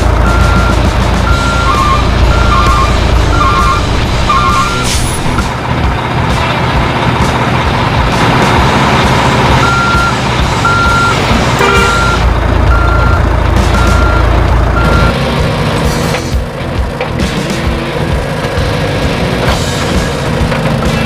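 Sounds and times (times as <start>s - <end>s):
rough engine rumble: 0.0s - 21.0s
truck reversing alarm beeping: 0.2s - 5.3s, 9.6s - 15.2s.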